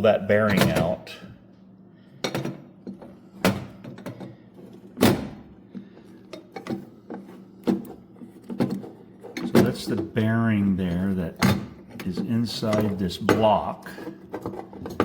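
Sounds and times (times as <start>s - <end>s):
hand tools knocking on metal parts: 11.4s - 15.0s.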